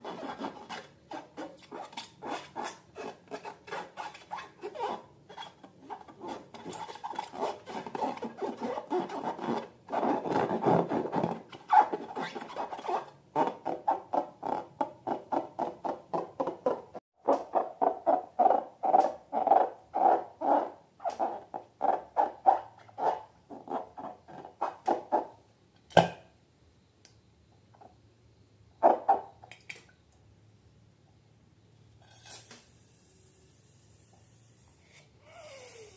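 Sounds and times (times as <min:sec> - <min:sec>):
balloons rubbed and squeaking: 0:00.0 - 0:15.9, 0:17.4 - 0:25.4.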